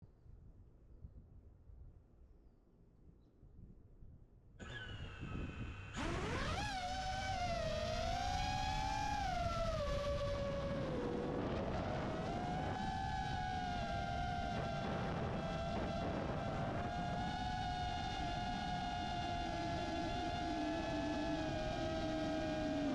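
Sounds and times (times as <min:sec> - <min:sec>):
drone motors whining: 0:04.6 - 0:22.9.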